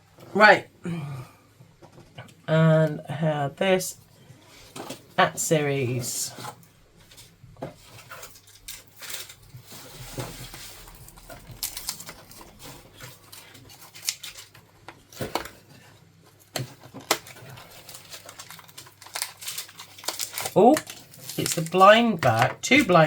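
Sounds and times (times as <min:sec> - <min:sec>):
packaging being handled and opened: 0:04.6 - 0:23.0.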